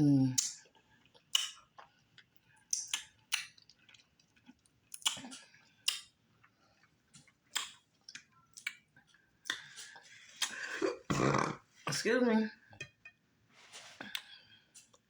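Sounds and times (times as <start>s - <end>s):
person chewing with mouth smacks: 0.4s - 11.3s, 13.9s - 15.0s.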